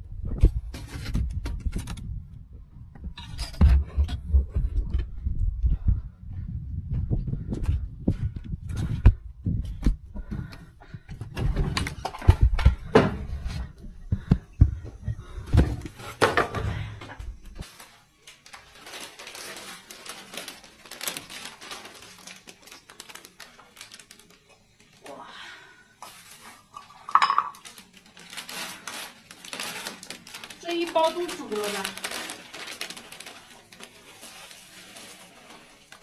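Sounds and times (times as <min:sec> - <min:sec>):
cooking pots and utensils clattering: 0:26.6 - 0:27.6.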